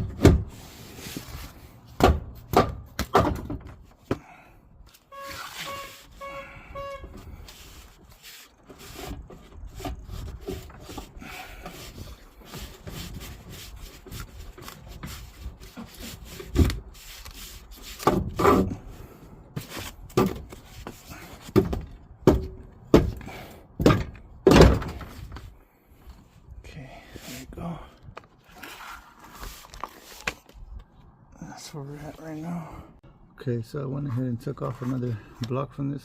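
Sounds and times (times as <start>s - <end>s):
wood scraping and rubbing: 5.2s - 18.7s, 28.3s - 30.6s, 34.0s - 35.5s.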